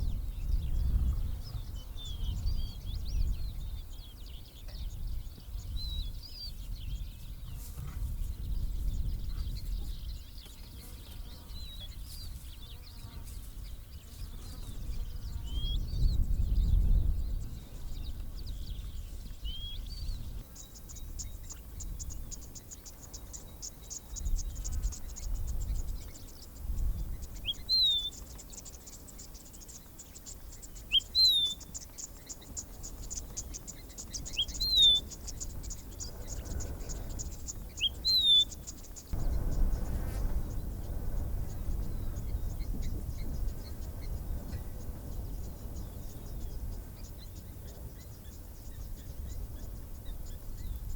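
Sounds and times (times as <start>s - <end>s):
bird whistled call: 27.4s - 28.2s, 30.9s - 31.7s, 34.1s - 35.4s, 36.1s - 38.7s.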